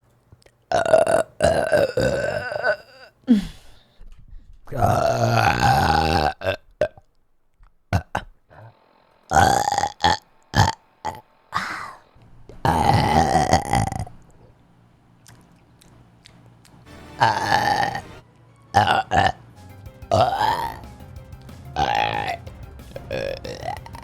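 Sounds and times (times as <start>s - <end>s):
person burping: 0.7s - 3.7s, 4.7s - 7.1s, 7.9s - 8.7s, 9.3s - 14.5s, 17.2s - 19.4s, 20.1s - 20.9s, 21.8s - 22.4s, 23.0s - 24.0s
mouth clicks: 4.6s - 18.1s, 23.0s - 24.0s.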